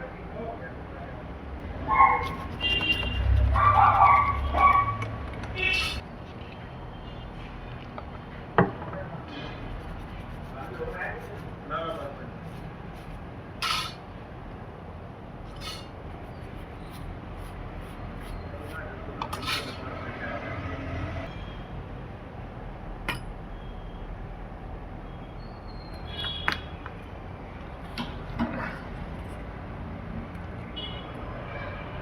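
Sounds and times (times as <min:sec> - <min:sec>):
steady background hum: 0:00.0 - 0:20.2
hand tools clicking and tapping: 0:03.8 - 0:06.0.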